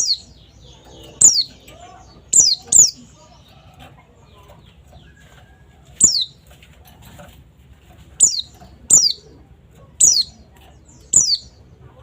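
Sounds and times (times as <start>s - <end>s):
high bird calls: 0.0s - 5.3s, 5.9s - 6.5s, 8.2s - 11.8s.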